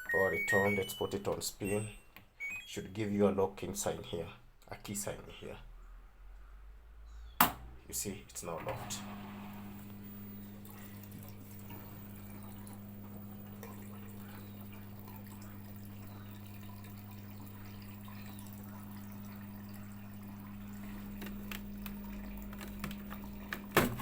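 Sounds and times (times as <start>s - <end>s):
washing machine humming: 0.0s - 5.1s, 7.4s - 24.0s
water trickling: 9.3s - 24.0s.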